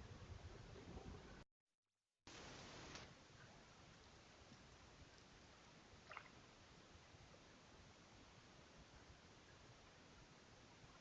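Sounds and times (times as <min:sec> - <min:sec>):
faint hiss: 0:02.3 - 0:11.0.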